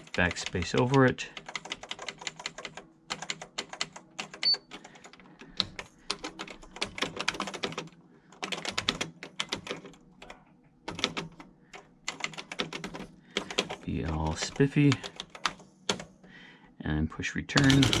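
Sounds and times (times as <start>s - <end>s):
typewriter keys clicking: 0.0s - 10.0s, 12.1s - 16.1s, 17.6s - 18.0s.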